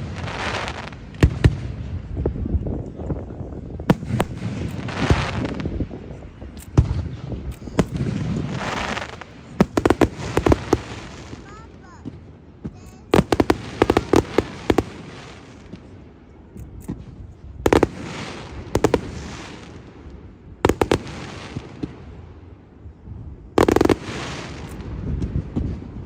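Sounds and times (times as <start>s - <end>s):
fireworks bursting: 0.0s - 2.3s, 3.6s - 22.6s, 23.5s - 26.0s.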